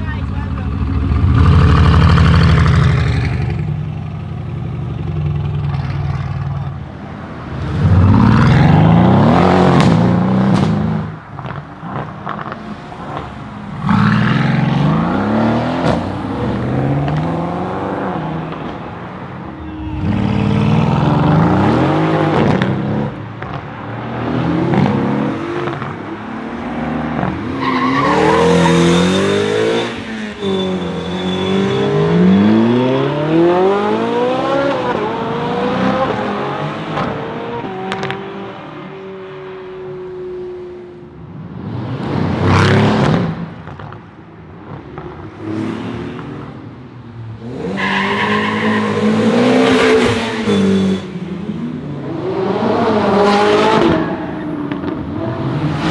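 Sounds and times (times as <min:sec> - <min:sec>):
car engine accelerating: 0:19.4 - 0:22.9.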